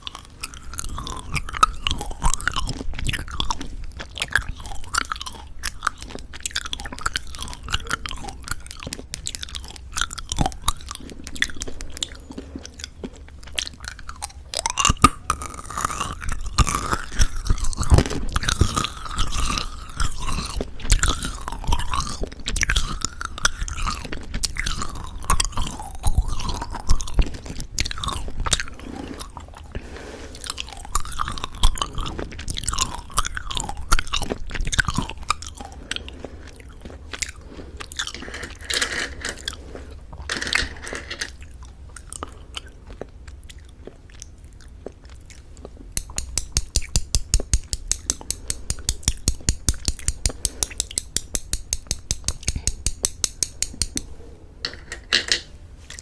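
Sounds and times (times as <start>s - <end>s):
mouth chewing candy: 0.0s - 54.5s
crisp chewing clicks: 44.2s - 54.1s.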